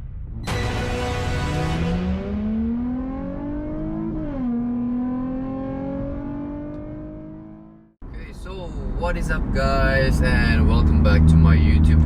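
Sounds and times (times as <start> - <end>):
car engine accelerating hard: 0.6 - 7.9, 9.7 - 12.0.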